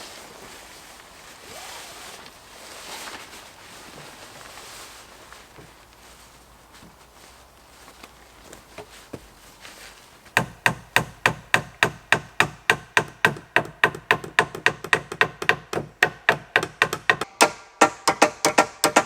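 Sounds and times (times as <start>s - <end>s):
sharp wooden knocks: 10.4s - 19.0s.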